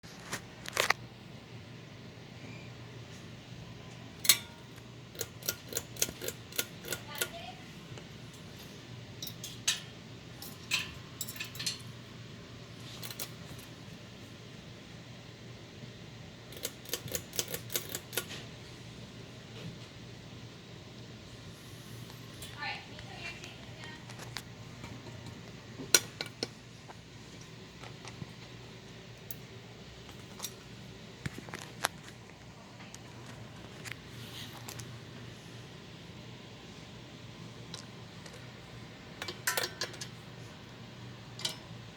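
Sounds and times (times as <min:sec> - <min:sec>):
steady low hum: 0:00.0 - 0:41.9
metal parts clicking and clinking: 0:04.2 - 0:07.4, 0:09.2 - 0:12.0, 0:12.8 - 0:13.7, 0:16.6 - 0:18.4, 0:39.2 - 0:40.2, 0:41.4 - 0:41.7.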